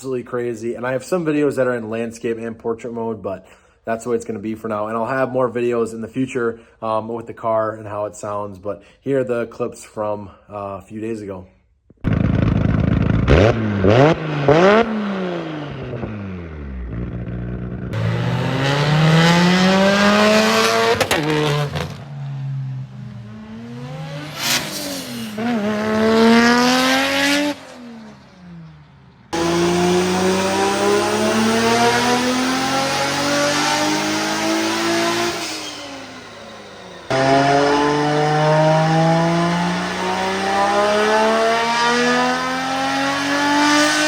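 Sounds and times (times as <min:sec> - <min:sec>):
car engine revving: 0:12.0 - 0:44.0.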